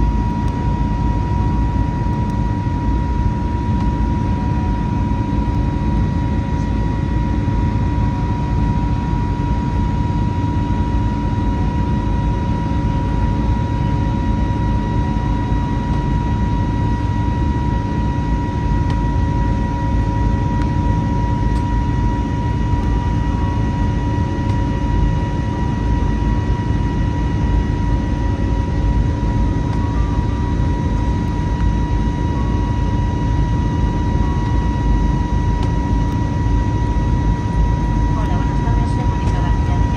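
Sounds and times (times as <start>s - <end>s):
aircraft cabin engine drone: 0.0s - 39.9s
high steady tone: 19.7s - 26.5s, 27.8s - 39.9s.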